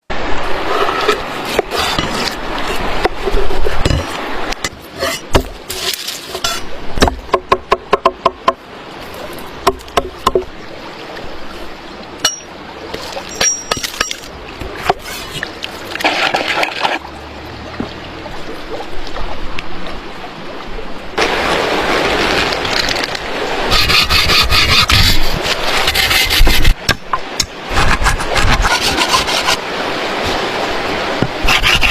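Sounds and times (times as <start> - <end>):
rustling and scraping: 0.6 - 6.7, 22.1 - 26.8, 27.7 - 29.6.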